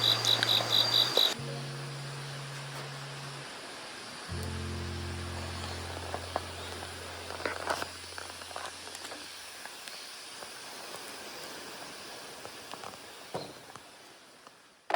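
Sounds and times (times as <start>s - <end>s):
steady hiss: 0.0s - 14.9s
low musical note: 1.4s - 9.5s.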